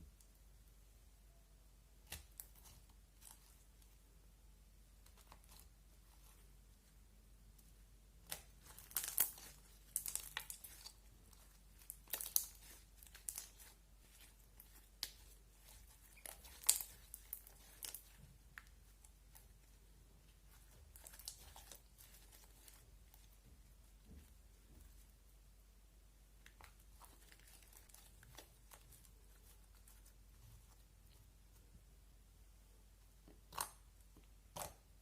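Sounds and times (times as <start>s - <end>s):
slime squished by hand: 8.2s - 19.6s.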